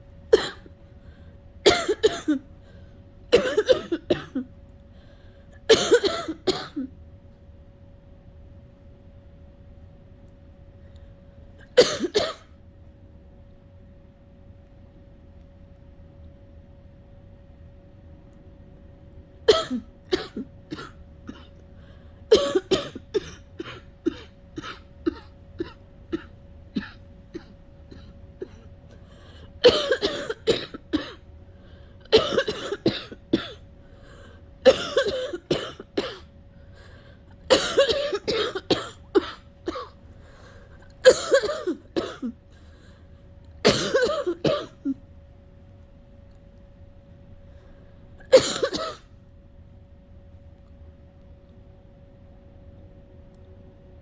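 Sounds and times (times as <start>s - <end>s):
person coughing: 0.3s - 0.7s, 1.6s - 2.5s, 3.3s - 4.5s, 5.7s - 6.9s, 11.6s - 12.5s, 19.5s - 21.6s, 22.3s - 28.7s, 29.6s - 31.2s, 32.1s - 33.6s, 34.6s - 36.3s, 37.5s - 40.0s, 41.0s - 42.4s, 43.6s - 45.0s, 48.2s - 49.1s.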